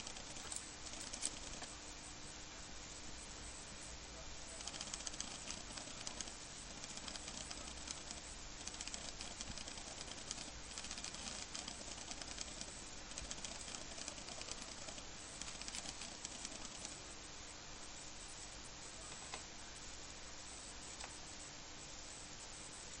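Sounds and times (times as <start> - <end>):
bird pecking clicks: 0.0 - 1.7, 4.6 - 17.0.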